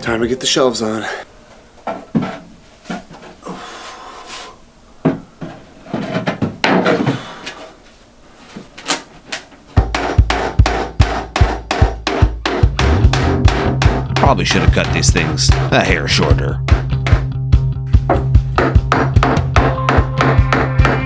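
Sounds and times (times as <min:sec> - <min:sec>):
wooden boards knocking and scraping: 0:01.9 - 0:03.4, 0:05.1 - 0:07.5, 0:08.6 - 0:17.3
music with drum beat: 0:09.8 - 0:21.0.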